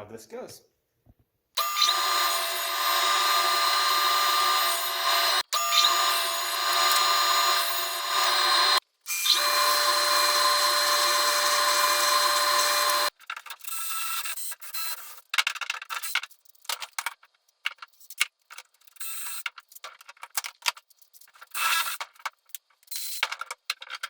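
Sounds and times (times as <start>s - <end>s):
power tool whining: 1.6s - 13.1s.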